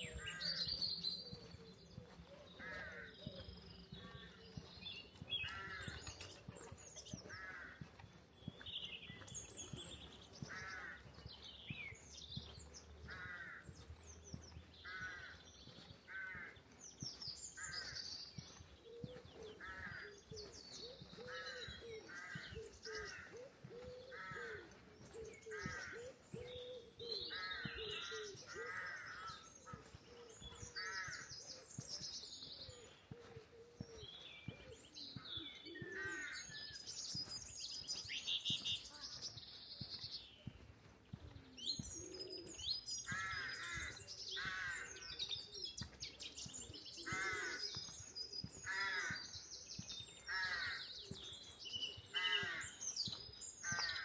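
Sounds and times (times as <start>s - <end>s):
songbirds chirping: 0.0s - 54.0s
crows cawing: 2.6s - 3.4s, 5.4s - 6.1s, 7.3s - 8.0s, 10.4s - 11.2s, 13.0s - 13.8s, 14.8s - 15.5s, 16.1s - 16.6s, 19.6s - 26.2s, 27.3s - 29.9s, 30.7s - 31.4s, 35.7s - 36.5s, 43.1s - 45.2s, 47.0s - 47.8s, 48.6s - 49.3s, 50.3s - 51.1s, 52.1s - 53.0s, 53.6s - 54.0s.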